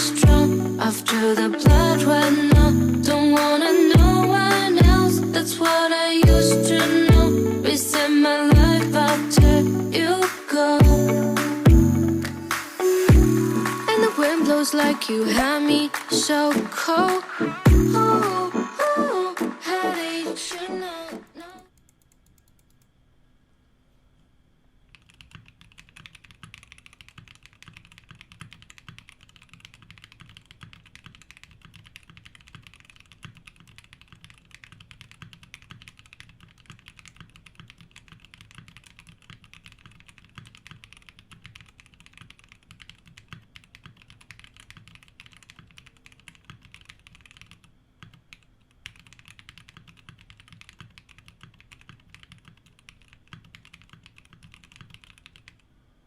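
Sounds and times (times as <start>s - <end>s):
fast typing on mechanical keyboard: 24.9s - 55.7s.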